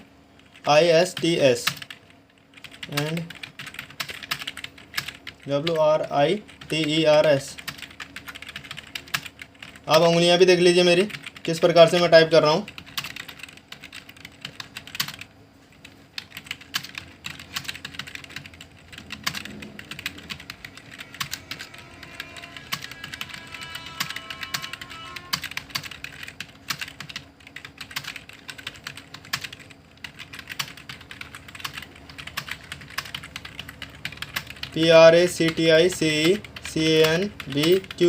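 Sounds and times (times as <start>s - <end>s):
computer keyboard typing: 0.4s - 38.0s.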